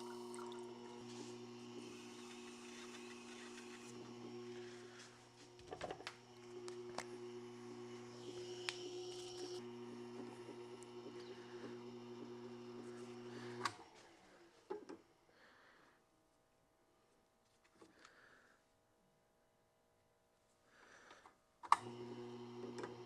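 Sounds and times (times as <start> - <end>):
sharpener motor humming: 0.0 - 13.9.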